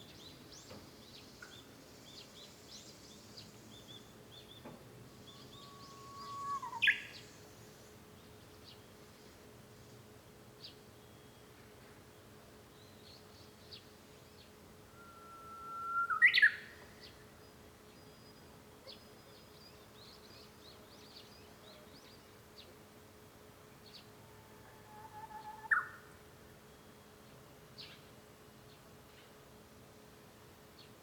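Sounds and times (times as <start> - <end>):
bush warbler singing: 0.0 - 9.0, 15.8 - 22.7, 24.9 - 26.0.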